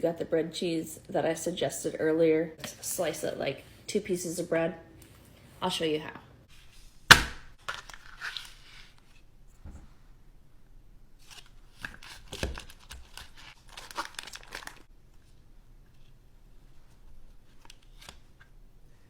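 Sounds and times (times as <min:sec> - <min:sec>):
scraping tearing and crinkling: 0:06.5 - 0:09.2, 0:11.2 - 0:14.9, 0:17.1 - 0:18.4.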